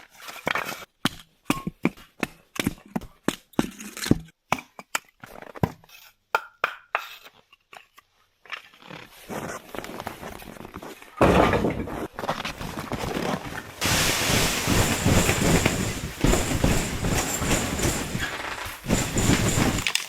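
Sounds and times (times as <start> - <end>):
wood fire crackling: 13.8 - 20.0.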